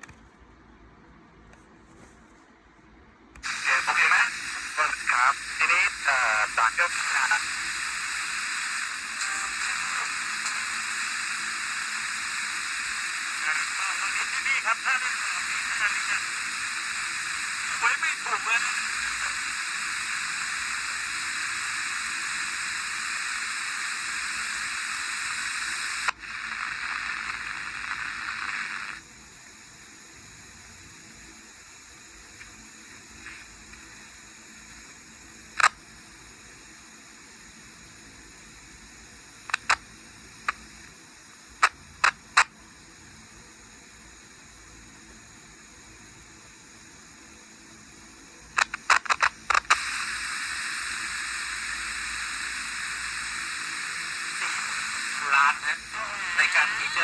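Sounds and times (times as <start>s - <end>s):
radio static hiss: 3.3s - 57.0s
sharp clicks: 39.5s - 40.6s, 48.6s - 49.9s.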